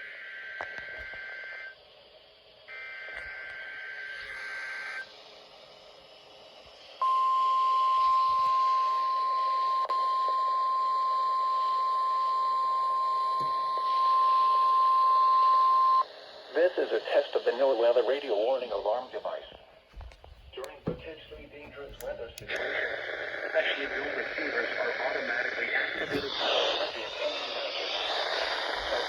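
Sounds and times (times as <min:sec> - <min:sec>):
radio hiss: 0:00.0 - 0:09.9, 0:13.2 - 0:29.0
steady alarm tone: 0:07.0 - 0:16.2.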